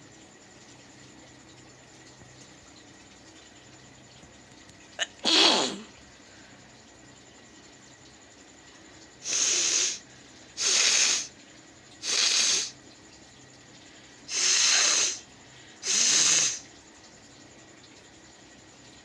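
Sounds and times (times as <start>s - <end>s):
woman blowing her nose: 5.2s - 5.8s, 9.2s - 10.0s, 10.6s - 11.3s, 12.0s - 12.7s, 14.3s - 15.2s, 15.8s - 16.6s.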